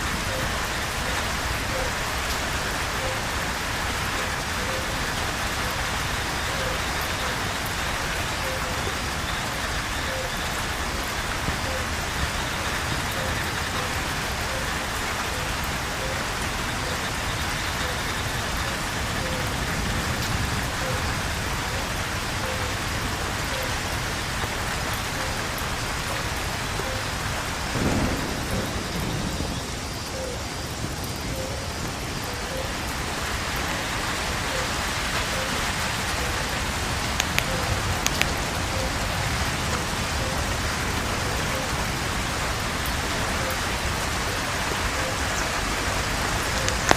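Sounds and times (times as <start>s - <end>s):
heavy rain pouring: 0.0s - 46.9s
low thunder clap: 27.7s - 31.9s.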